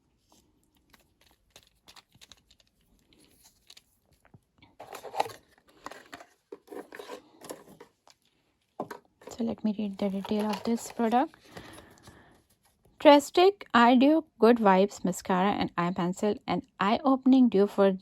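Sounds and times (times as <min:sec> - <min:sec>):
packaging crinkling and rustling: 0:00.2 - 0:12.8
packaging clicks and taps: 0:03.4 - 0:08.2, 0:08.8 - 0:12.2.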